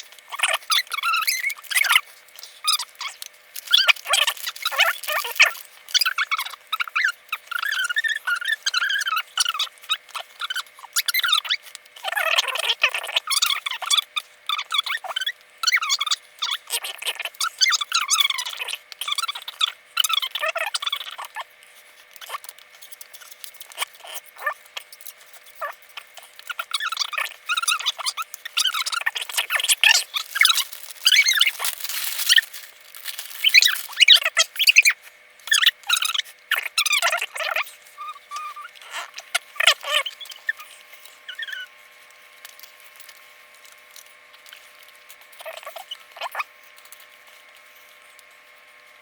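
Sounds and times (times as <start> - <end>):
faint steady hum: 0.0 - 49.0
high squeaky chirping: 0.3 - 21.4, 22.2 - 41.7, 45.4 - 46.5.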